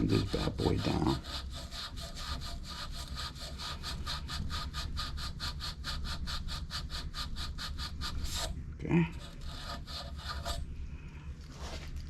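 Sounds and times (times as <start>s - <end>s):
sandpaper rubbing metal pipe: 0.0s - 10.7s.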